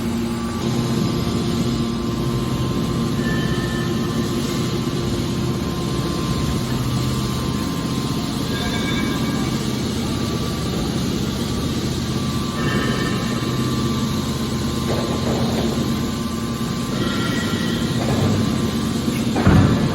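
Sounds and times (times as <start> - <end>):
baler machine hum: 0.0 - 19.9.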